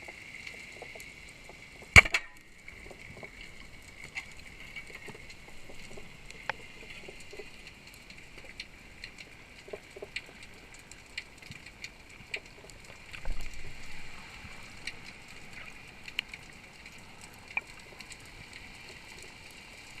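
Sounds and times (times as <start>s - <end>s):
sharp clicks and crackles: 0.0s - 20.0s.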